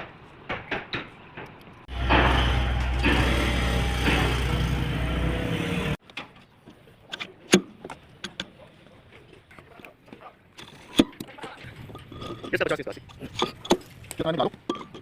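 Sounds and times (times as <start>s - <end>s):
machine low drone: 1.9s - 6.0s
tools clinking on engine parts: 10.6s - 15.0s.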